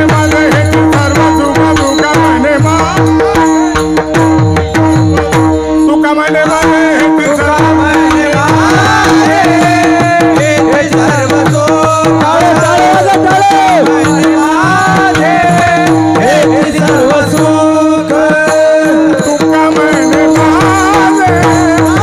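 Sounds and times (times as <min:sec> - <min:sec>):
person singing: 0:05.1 - 0:22.0.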